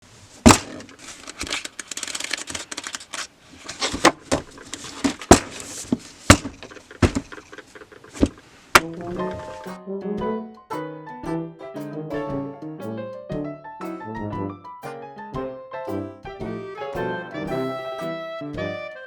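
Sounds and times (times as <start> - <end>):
paper and pen rustling: 0.4 - 9.8.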